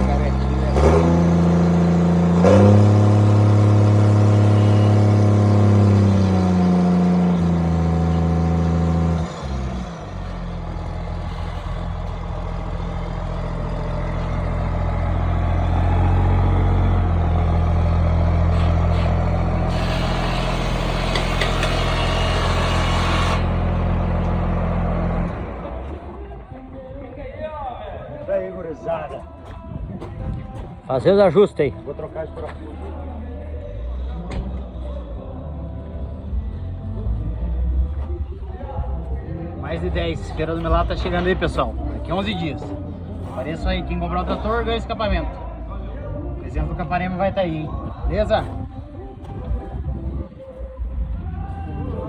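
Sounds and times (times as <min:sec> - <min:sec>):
loud tractor diesel engine: 0:00.0 - 0:52.0.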